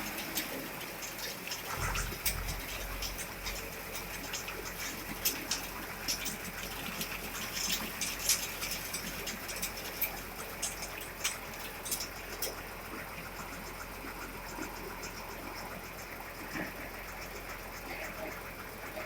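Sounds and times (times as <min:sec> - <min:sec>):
concrete mixer rushing: 0:00.0 - 0:12.4.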